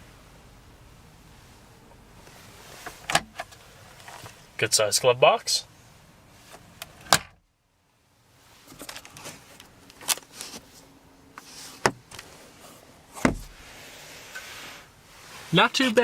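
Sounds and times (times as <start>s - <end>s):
faint rustling: 0.0s - 4.6s, 8.4s - 16.0s
glove box latch clicks: 6.8s - 7.4s.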